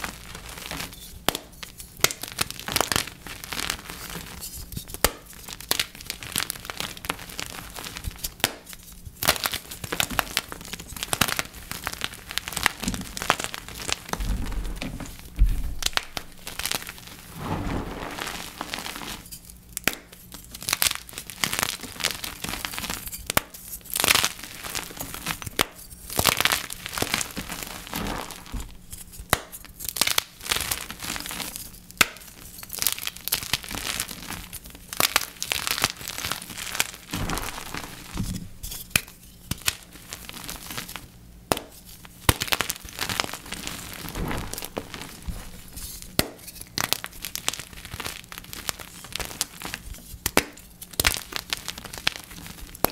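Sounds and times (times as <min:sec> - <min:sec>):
chalk being crushed: 0:35.0 - 0:52.9.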